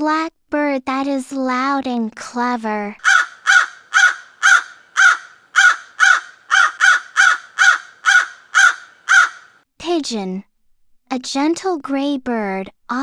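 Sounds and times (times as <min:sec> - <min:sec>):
crow cawing: 0:03.0 - 0:09.6.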